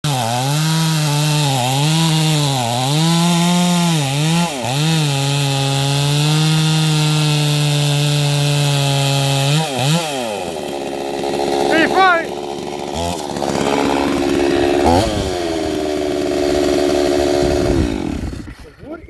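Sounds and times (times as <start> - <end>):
chainsaw cutting wood: 0.0 - 18.7.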